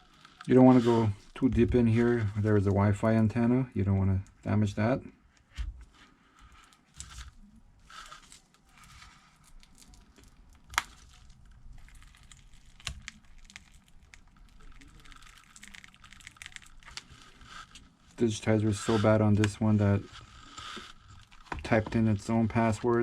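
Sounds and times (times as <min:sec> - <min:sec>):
glass prying crackling and scraping: 0:09.6 - 0:18.0.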